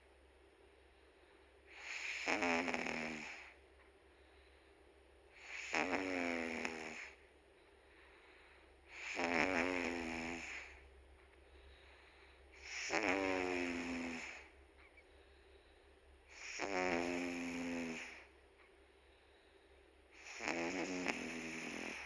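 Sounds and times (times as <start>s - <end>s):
cat snoring: 1.7s - 3.6s, 5.3s - 7.2s, 8.4s - 10.8s, 11.7s - 14.6s, 16.3s - 18.3s, 20.1s - 22.0s.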